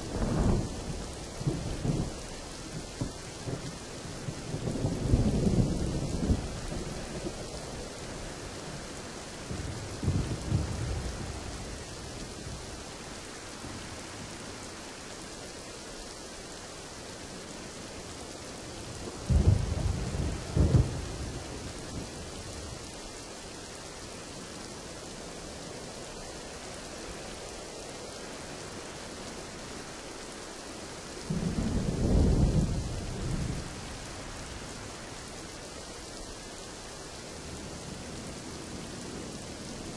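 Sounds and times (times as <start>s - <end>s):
thunder rumbling: 0.0s - 12.7s, 18.9s - 22.9s, 31.2s - 35.6s
steady rain: 0.0s - 39.9s.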